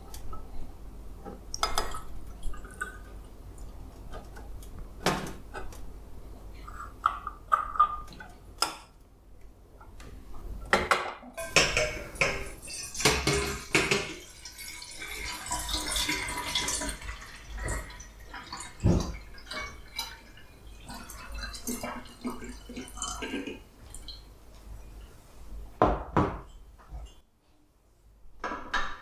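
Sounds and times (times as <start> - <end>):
water dripping: 11.4 - 25.2.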